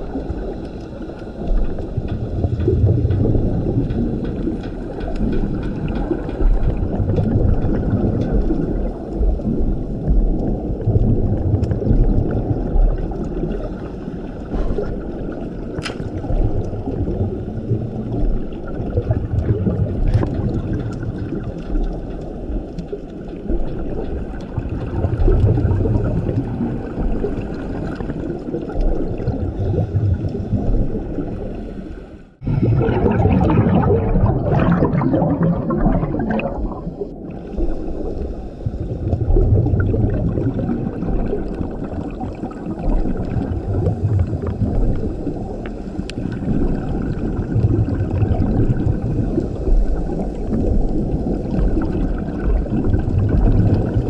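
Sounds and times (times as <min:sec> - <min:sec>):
gush of exhaled bubbles: 0:00.0 - 0:54.0
diver breathing through regulator: 0:13.5 - 0:16.5, 0:29.3 - 0:39.8.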